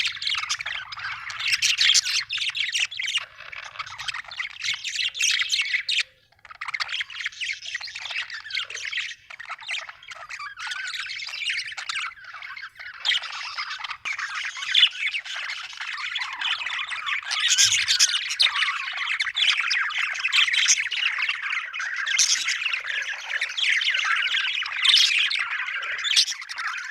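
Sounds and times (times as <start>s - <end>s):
budgerigar chirping and chattering: 0.0s - 26.9s.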